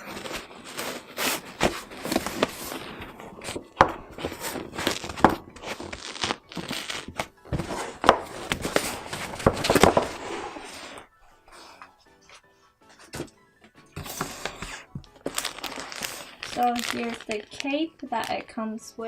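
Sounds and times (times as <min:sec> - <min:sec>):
plastic packaging crinkling: 0:00.0 - 0:11.1, 0:13.1 - 0:18.6
plastic parts clicking and knocking: 0:06.6 - 0:10.2.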